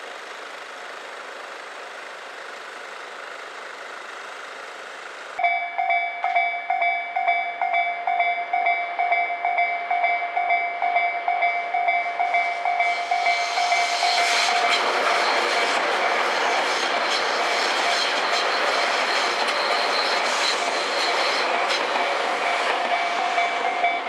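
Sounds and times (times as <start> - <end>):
approaching train: 0.0 - 24.0
level-crossing warning bell: 5.4 - 24.0.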